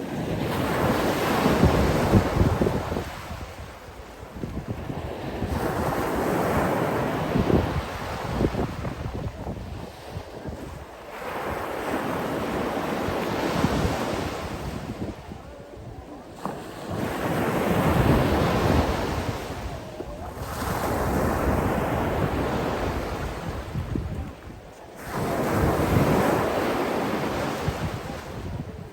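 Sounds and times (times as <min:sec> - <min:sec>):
sea waves rushing surf: 0:00.0 - 0:28.9.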